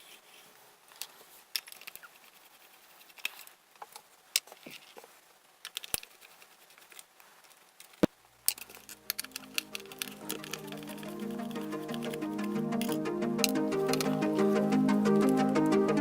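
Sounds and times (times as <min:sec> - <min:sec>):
music: 0:08.9 - 0:16.0.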